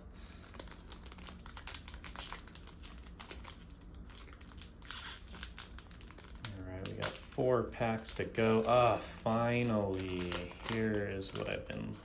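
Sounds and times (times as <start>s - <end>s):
plastic wrapper crinkling: 0.2s - 12.0s
plastic wrapper tearing: 0.3s - 12.0s.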